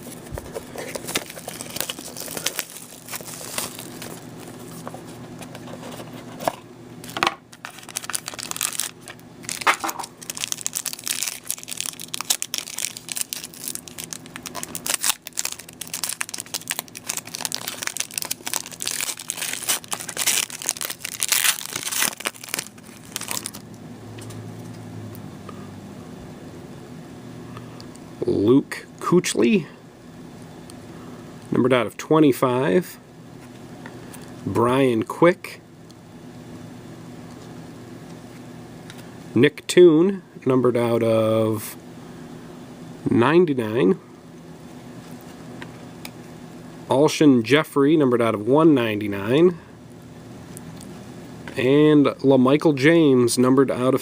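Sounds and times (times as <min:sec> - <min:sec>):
wrapper crinkling and tearing: 0:00.5 - 0:04.6, 0:07.1 - 0:23.7.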